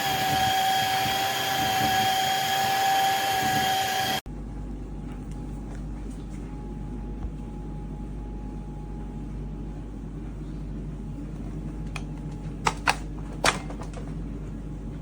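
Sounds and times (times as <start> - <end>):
vacuum mop humming: 0.0 - 4.2.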